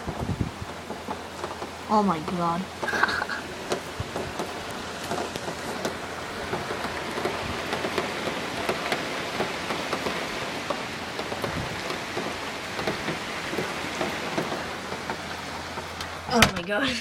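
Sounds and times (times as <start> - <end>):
heavy rain hissing: 0.0 - 17.0.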